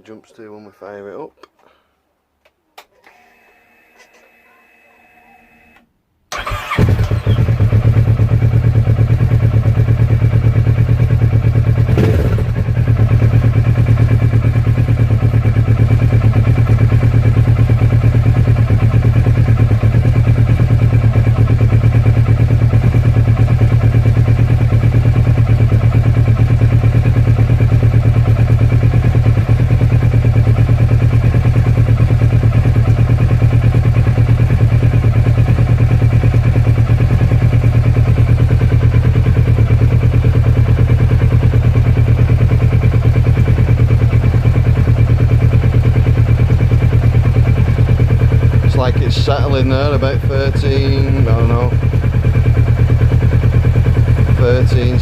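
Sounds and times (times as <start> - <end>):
motorcycle engine starting and idling: 5.5 - 55.0.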